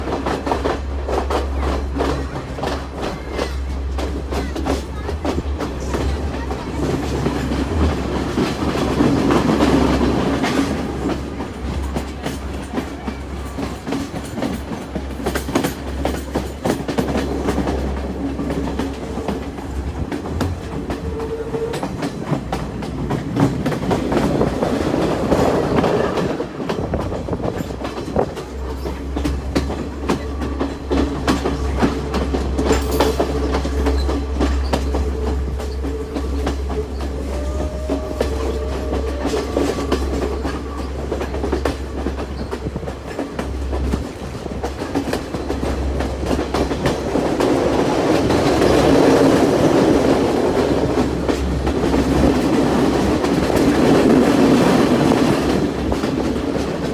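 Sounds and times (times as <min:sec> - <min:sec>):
train rumble: 0:00.0 - 0:56.9
train wheels clicking over rail joints: 0:00.0 - 0:56.9.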